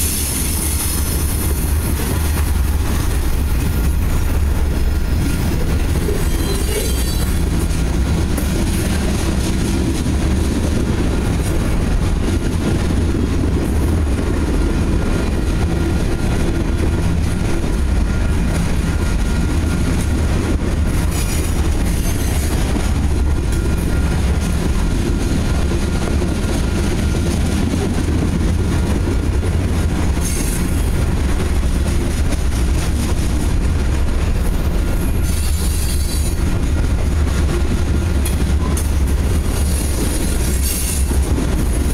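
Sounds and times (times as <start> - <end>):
train wheels rumbling on rail: 0.0 - 41.9
high-pitched wheel squeals: 5.4 - 7.4.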